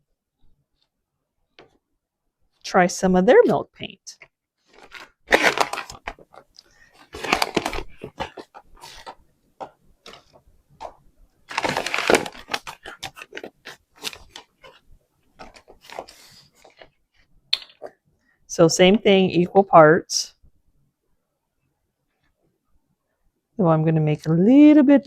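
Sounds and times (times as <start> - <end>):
packaging crinkling and tearing: 4.6 - 9.2, 10.0 - 14.8, 15.4 - 16.9.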